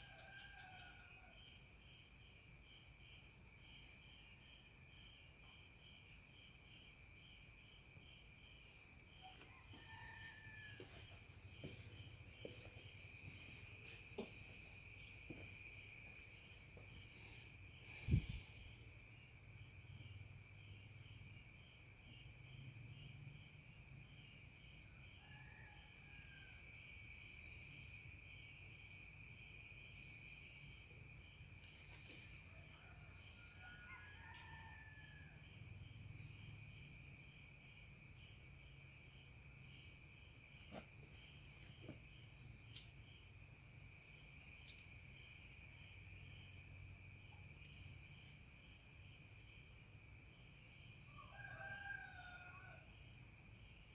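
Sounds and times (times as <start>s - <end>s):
rooster crowing faintly: 0.0s - 1.7s, 9.1s - 18.8s, 31.6s - 35.6s, 51.0s - 53.0s
crickets chirping: 0.0s - 53.9s.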